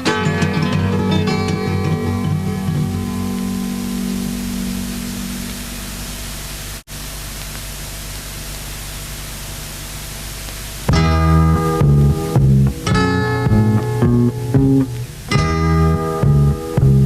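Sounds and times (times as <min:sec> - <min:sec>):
guitar music: 0:00.0 - 0:06.8, 0:10.8 - 0:17.0
steady hiss: 0:00.0 - 0:17.0
faint low hum: 0:00.1 - 0:17.0.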